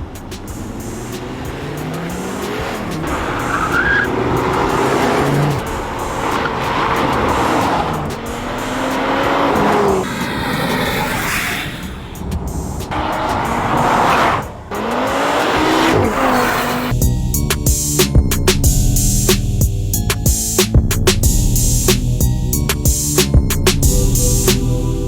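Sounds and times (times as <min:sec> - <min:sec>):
car engine revving hard: 0:00.0 - 0:16.9
tyre and road noise: 0:00.0 - 0:24.7.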